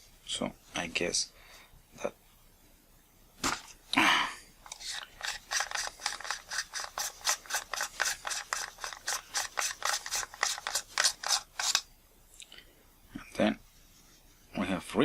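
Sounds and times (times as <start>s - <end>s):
metal parts scraping: 4.7s - 11.8s
gritty rasping of unscrewing thread: 4.7s - 11.9s.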